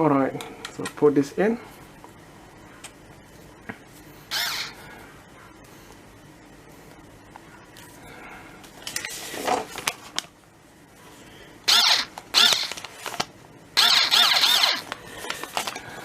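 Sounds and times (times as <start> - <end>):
cordless screwdriver motor whirring: 4.3 - 4.7, 11.7 - 12.8, 13.8 - 15.0.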